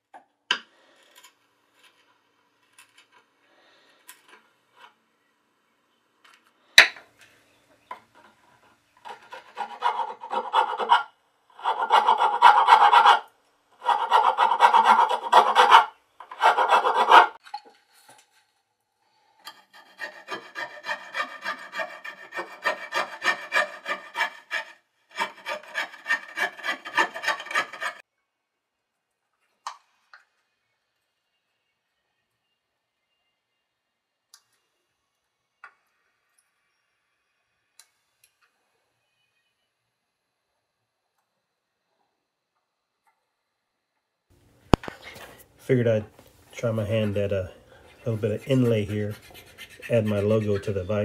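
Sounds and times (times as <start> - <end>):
hand tool scraping wood: 8.2 - 17.4, 19.5 - 28.0, 44.8 - 51.0.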